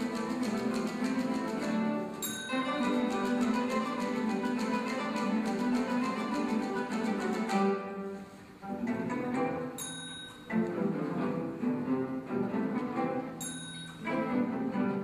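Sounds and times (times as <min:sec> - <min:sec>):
guitars playing fast plucked passage: 0:00.0 - 0:08.0
high bell ding: 0:02.2 - 0:02.9, 0:09.8 - 0:10.5, 0:13.4 - 0:14.1.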